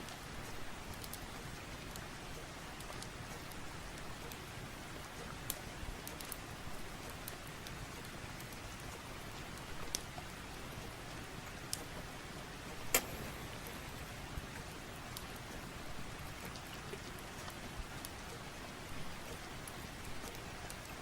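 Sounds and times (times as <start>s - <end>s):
steady rain: 0.0s - 21.0s
wood fire popping and crackling: 5.4s - 21.0s.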